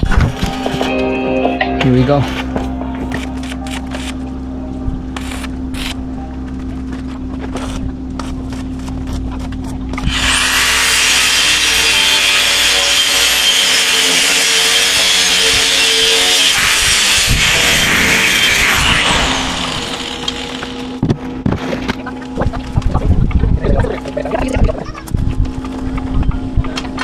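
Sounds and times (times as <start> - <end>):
electric saw whining: 0.0 - 9.0, 9.9 - 21.0
saw cutting through metal: 7.6 - 21.0.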